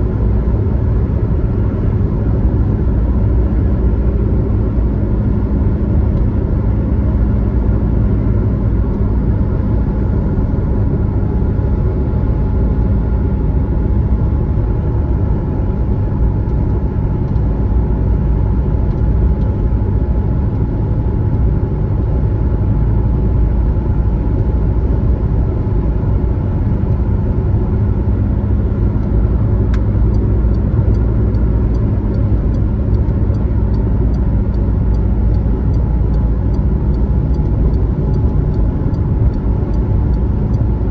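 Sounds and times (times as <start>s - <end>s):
car engine and tyre rumble: 0.0s - 40.9s
faint regular ticking: 29.7s - 40.7s.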